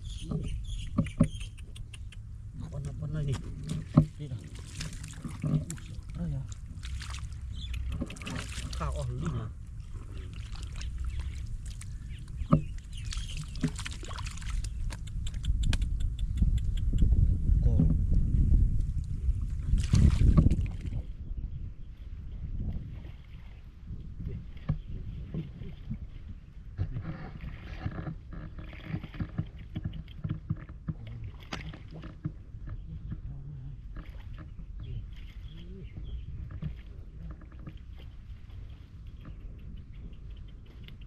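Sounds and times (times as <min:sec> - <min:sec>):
steady low rumble: 0:00.0 - 0:28.3
water sloshing and splashing: 0:02.3 - 0:15.8, 0:18.7 - 0:21.1, 0:22.1 - 0:41.0.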